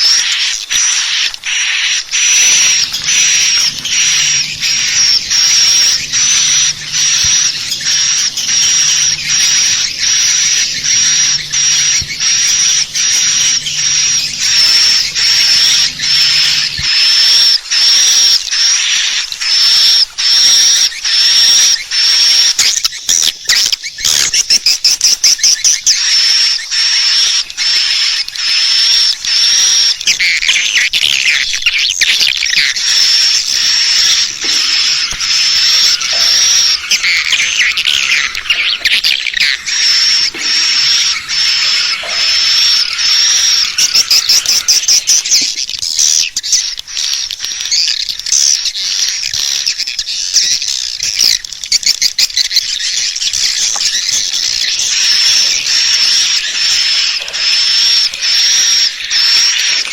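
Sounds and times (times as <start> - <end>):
swiftlets chirping and twittering: 0.0 - 59.9
thin high whistle: 32.2 - 46.4, 54.3 - 59.9.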